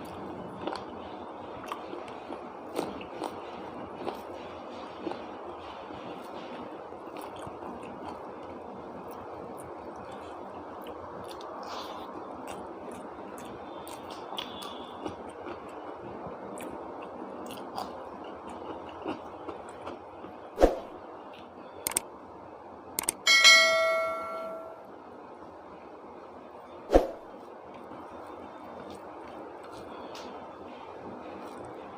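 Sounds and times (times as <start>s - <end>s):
eating with clicks and taps: 0.0s - 20.5s, 21.3s - 22.0s, 23.0s - 23.3s, 27.7s - 31.9s
steady background noise: 0.0s - 31.9s
metal tableware ringing: 23.2s - 24.8s.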